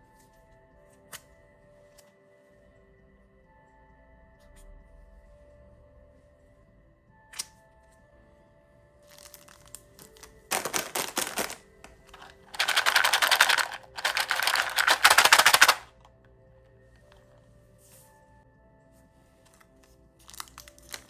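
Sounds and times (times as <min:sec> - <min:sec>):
soft background music: 0:00.0 - 0:21.0
plastic candy wrapper crinkling: 0:09.1 - 0:15.9, 0:20.2 - 0:21.0.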